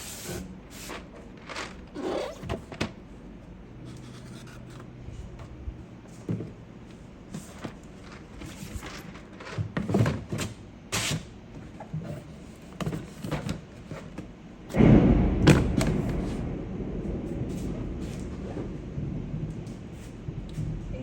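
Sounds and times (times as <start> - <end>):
boxes and packaging handled: 11.7 - 14.3
thunder rumbling: 14.6 - 21.0.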